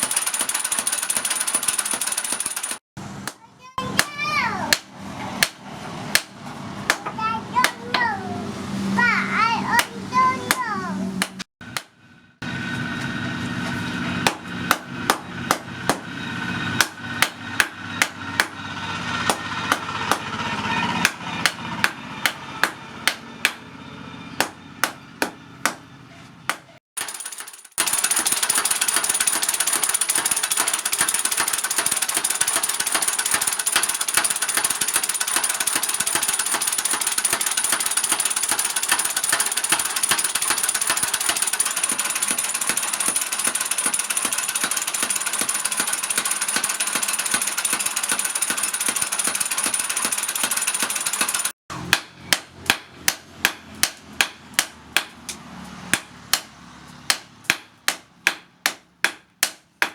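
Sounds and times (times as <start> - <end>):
power tool working metal: 0.0 - 2.8, 12.4 - 25.2, 27.0 - 52.4
hammer striking steel on anvil: 9.8 - 12.0, 14.2 - 25.9, 39.0 - 56.5, 57.1 - 59.9.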